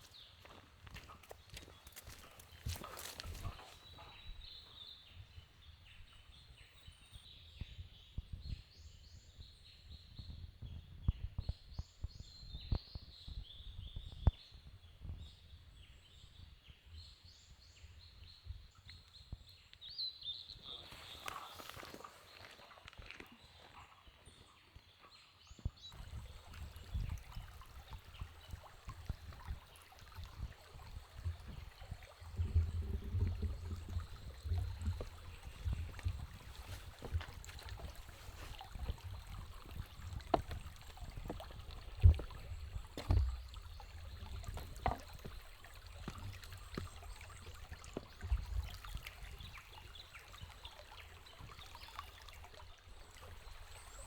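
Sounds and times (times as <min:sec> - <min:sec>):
faint stream water flowing: 0:00.0 - 0:54.0
low thumps and knocks: 0:31.2 - 0:48.8.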